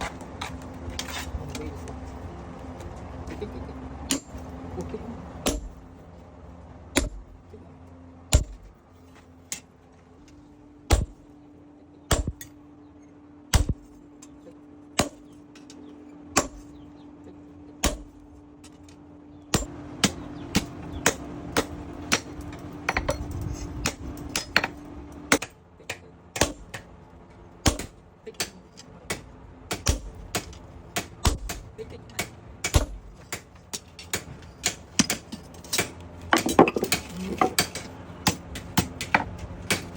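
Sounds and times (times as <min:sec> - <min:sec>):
steady low hum: 0:00.0 - 0:39.9
hammer striking metal on anvil: 0:04.1 - 0:04.4, 0:05.4 - 0:05.8, 0:07.0 - 0:07.4, 0:08.3 - 0:08.7, 0:10.9 - 0:11.2, 0:12.1 - 0:12.5, 0:13.5 - 0:13.9, 0:15.0 - 0:15.3, 0:16.4 - 0:16.7, 0:17.8 - 0:18.8, 0:19.5 - 0:25.5, 0:26.4 - 0:26.8, 0:29.1 - 0:39.9.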